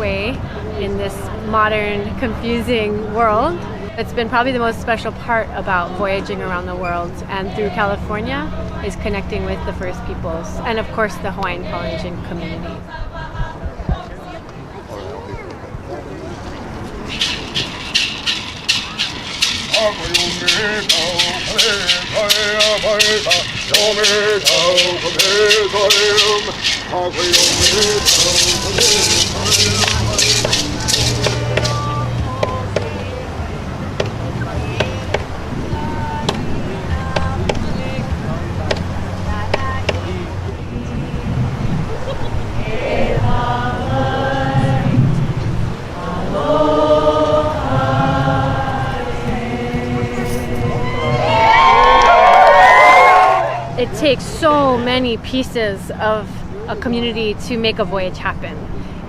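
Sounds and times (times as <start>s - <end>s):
voices chanting long notes: 17.0s - 41.6s, 42.4s - 54.6s
hand rattle shaken: 17.1s - 32.6s
person singing: 19.6s - 33.6s.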